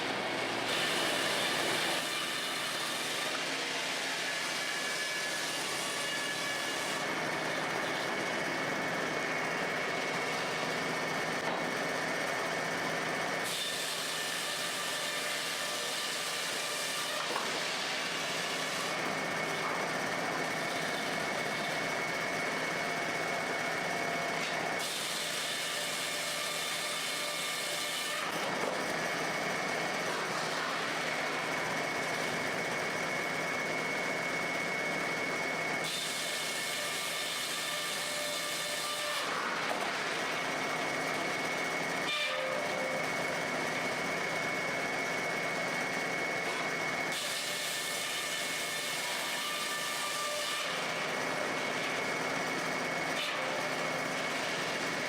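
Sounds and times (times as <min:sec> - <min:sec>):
sawmill machinery running: 0:00.0 - 0:55.0.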